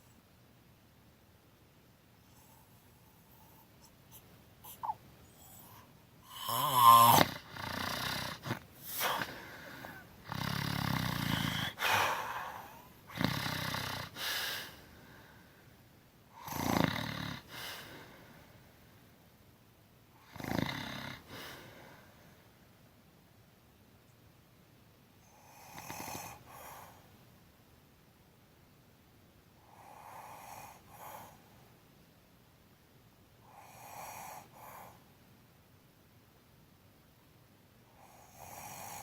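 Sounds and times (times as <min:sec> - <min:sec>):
person snoring: 0:04.8 - 0:14.6, 0:16.4 - 0:17.6, 0:20.3 - 0:21.3.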